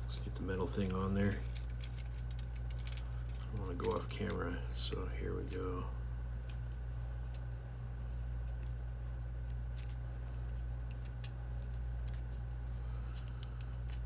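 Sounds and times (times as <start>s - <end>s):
steady low hum: 0.0s - 14.0s
small metal parts clicking: 0.8s - 4.4s.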